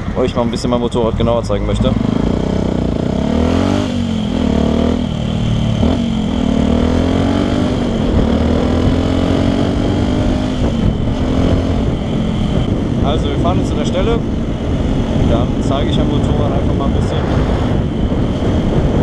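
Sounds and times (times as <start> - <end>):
motorcycle engine accelerating: 0.4 - 19.0.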